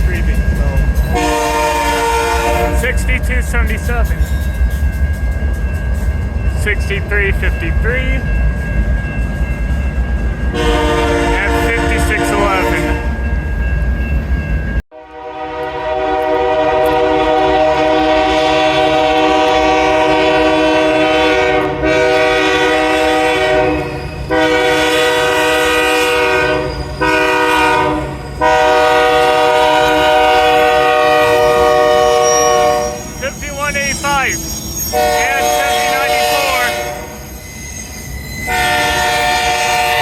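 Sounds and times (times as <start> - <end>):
passing train rumble: 0.0 - 40.0
locomotive air horn blasts: 1.1 - 3.0, 10.6 - 13.0, 14.9 - 33.8, 34.9 - 37.2, 38.5 - 40.0.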